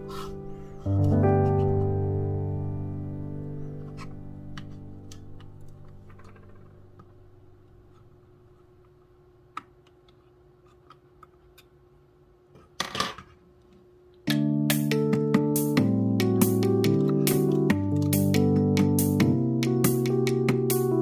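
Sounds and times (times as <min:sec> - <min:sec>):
background music: 0:00.0 - 0:06.4, 0:14.3 - 0:21.0.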